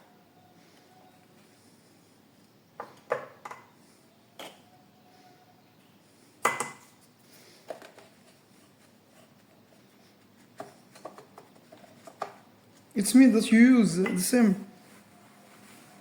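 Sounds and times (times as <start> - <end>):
kitchen items clinking and knocking: 14.0 - 14.6.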